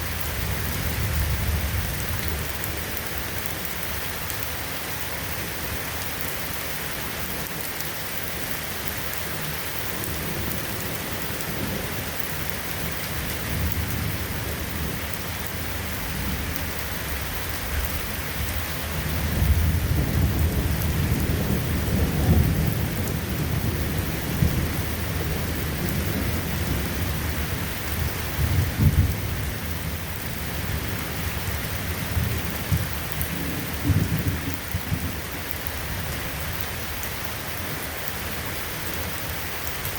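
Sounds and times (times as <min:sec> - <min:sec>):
thunder rumbling: 0:00.0 - 0:03.4, 0:10.0 - 0:37.1
steady rain falling: 0:00.0 - 0:39.9.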